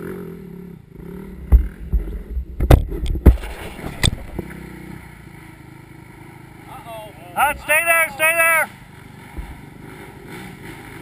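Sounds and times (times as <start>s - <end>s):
off-road vehicle engine running: 0.0s - 11.0s
heavy knocks and thumps: 1.4s - 4.5s, 9.3s - 9.7s.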